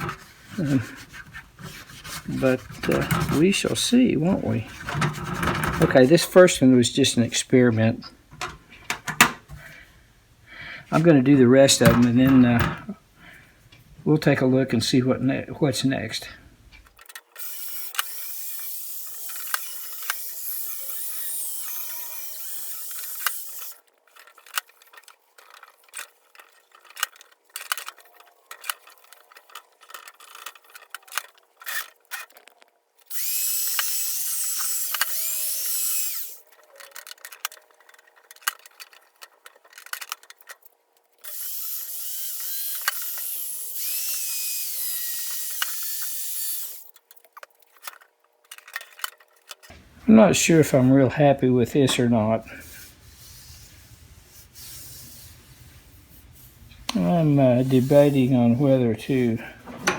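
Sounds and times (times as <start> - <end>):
handling clicks and knocks: 8.3 - 9.6, 10.9 - 13.0, 59.6 - 59.9
power drill polishing metal: 17.4 - 23.8, 33.1 - 36.4, 41.3 - 46.9.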